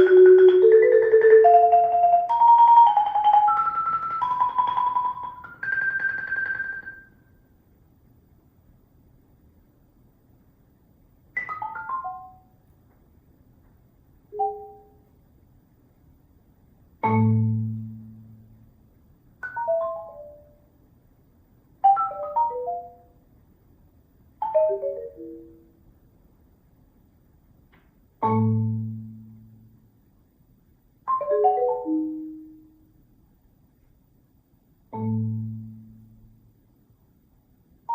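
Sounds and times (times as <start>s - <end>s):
marimba playing quick runs: 0.0s - 7.1s.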